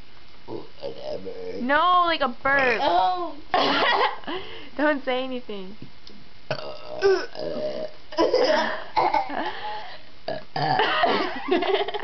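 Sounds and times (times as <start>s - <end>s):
person burping: 0.5s - 1.7s, 2.6s - 3.0s, 6.5s - 9.5s, 10.3s - 11.3s.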